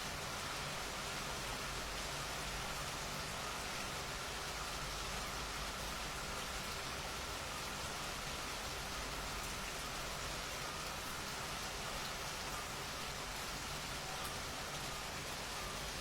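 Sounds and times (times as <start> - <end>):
steady rainfall: 0.0 - 16.0.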